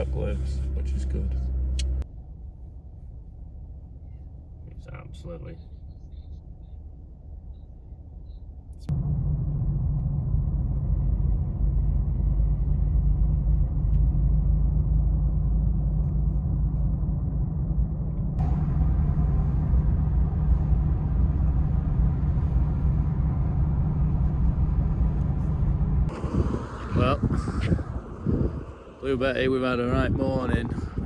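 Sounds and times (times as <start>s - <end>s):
road noise: 0.0s - 31.0s
pickup truck engine rumble: 8.9s - 31.0s.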